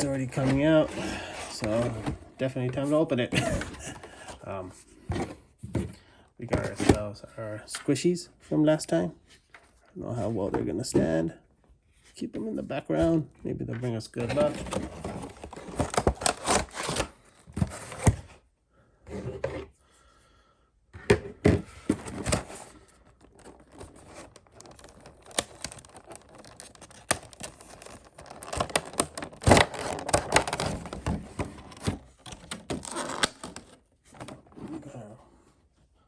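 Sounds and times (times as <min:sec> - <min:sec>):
cardboard tearing and crinkling: 0:14.2 - 0:18.2, 0:22.0 - 0:35.0.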